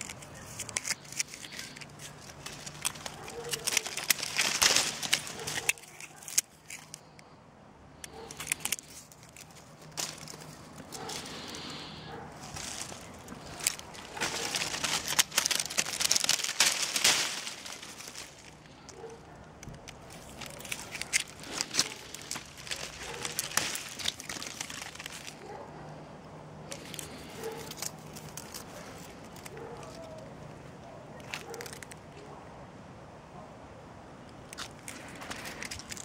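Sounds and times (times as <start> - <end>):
bonfire crackling and popping: 8.3 - 25.4.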